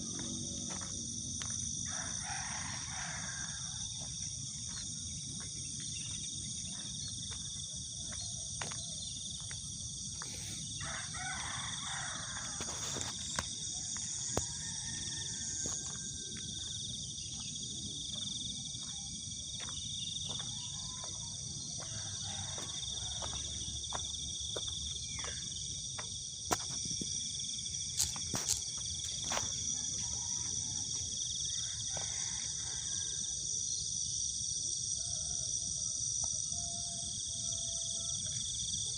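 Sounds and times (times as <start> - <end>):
insects shrilling: 27.8 - 29.6.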